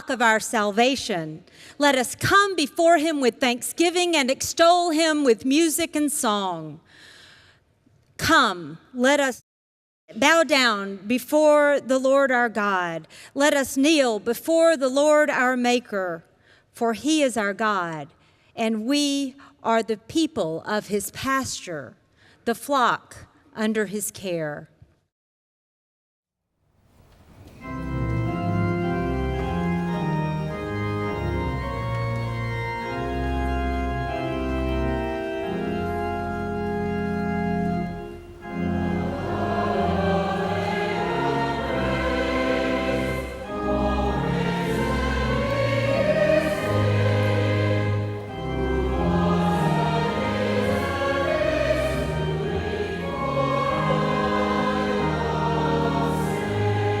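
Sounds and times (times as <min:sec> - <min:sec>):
organ playing a hymn: 0:27.3 - 0:57.0
congregation singing a hymn: 0:38.4 - 0:57.0.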